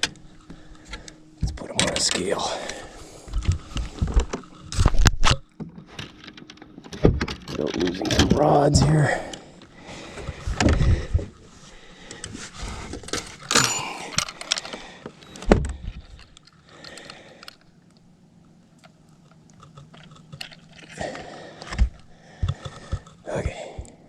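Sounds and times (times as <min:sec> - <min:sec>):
gear clicking and rattling: 0:00.0 - 0:11.4, 0:12.1 - 0:17.7.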